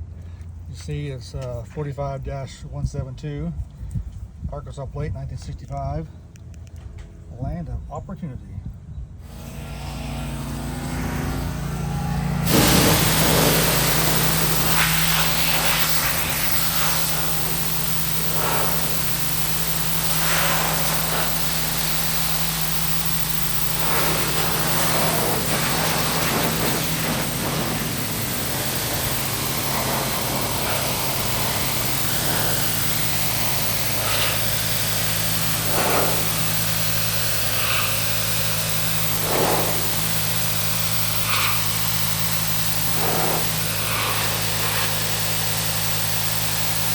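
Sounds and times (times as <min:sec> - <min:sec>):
pressure washer engine running: 0:09.2 - 0:46.9
high-pressure water spray hissing: 0:11.0 - 0:46.9.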